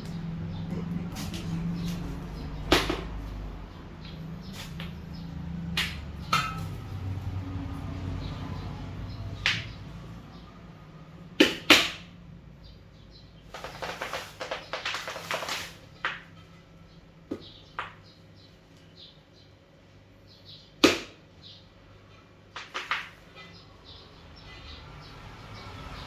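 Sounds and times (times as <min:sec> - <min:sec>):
sharp knocks: 0:02.4 - 0:03.2
crackly rustling: 0:13.5 - 0:16.4.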